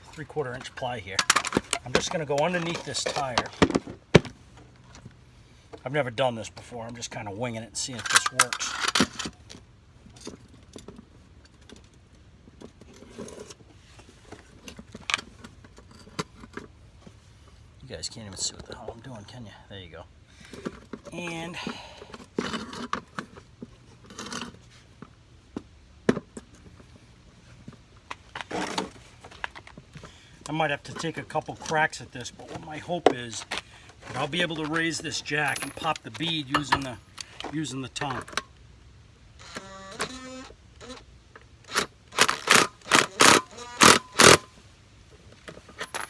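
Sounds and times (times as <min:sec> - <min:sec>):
jack scraping: 0:00.0 - 0:05.0, 0:06.5 - 0:09.4, 0:28.2 - 0:38.4, 0:41.7 - 0:44.5.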